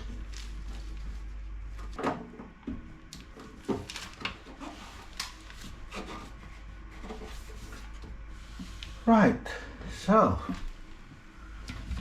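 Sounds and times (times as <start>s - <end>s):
rubbing scrapes: 4.5s - 9.0s.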